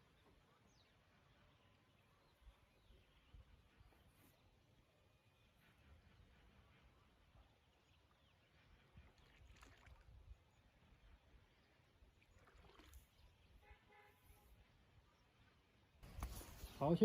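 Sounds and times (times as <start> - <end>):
faint brief rustles: 16.0 - 16.9.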